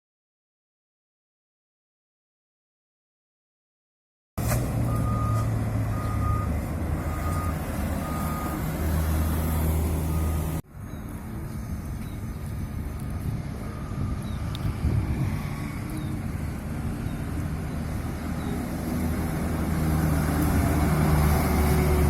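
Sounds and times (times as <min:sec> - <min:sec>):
diesel engine running: 0:04.4 - 0:22.0
traffic noise: 0:04.4 - 0:22.0
reversing beeper: 0:04.8 - 0:15.1.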